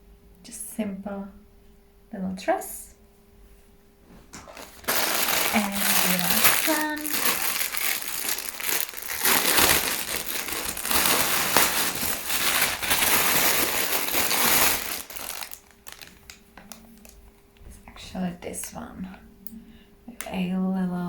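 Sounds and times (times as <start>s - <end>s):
packaging crinkling and rustling: 4.4s - 17.2s.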